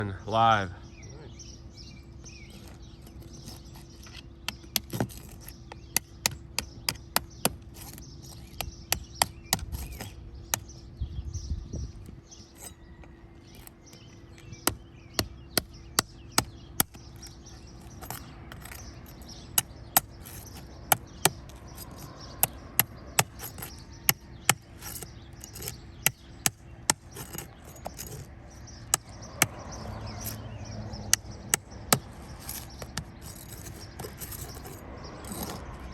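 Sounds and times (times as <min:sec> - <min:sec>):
metal tool taps on shingles: 0:12.6 - 0:30.4, 0:31.1 - 0:35.7.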